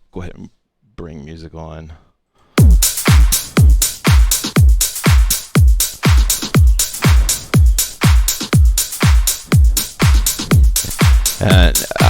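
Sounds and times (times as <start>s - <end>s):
electronic dance music: 2.6s - 12.0s
hi-hat ticks: 2.6s - 12.0s
steady kick drum: 2.6s - 12.0s.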